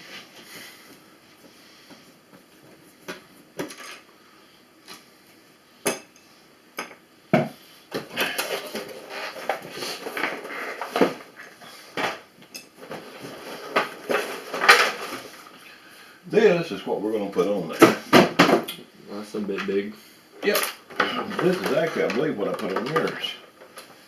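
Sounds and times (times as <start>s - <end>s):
clatter with rustling: 12.8s - 15.5s.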